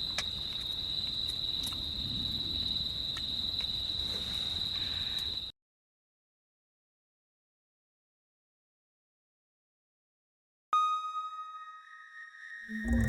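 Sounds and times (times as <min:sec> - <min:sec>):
insect trilling: 0:12.7 - 0:13.0.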